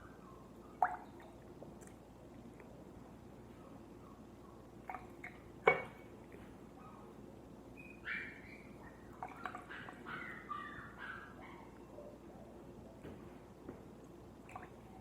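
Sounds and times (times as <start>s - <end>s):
juice dripping into container: 0.8s - 3.1s, 4.8s - 6.4s, 14.0s - 15.0s.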